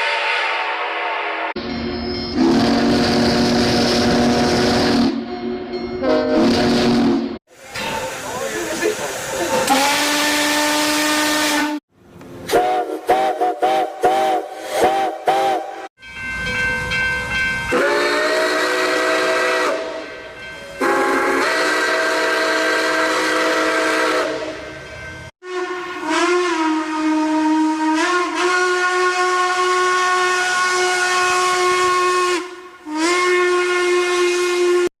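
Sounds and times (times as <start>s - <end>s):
steam train whistle: 0.0s - 1.5s, 2.3s - 5.3s, 6.0s - 7.3s, 9.5s - 11.8s, 12.4s - 15.9s, 17.7s - 20.2s, 20.8s - 24.8s, 25.4s - 34.9s.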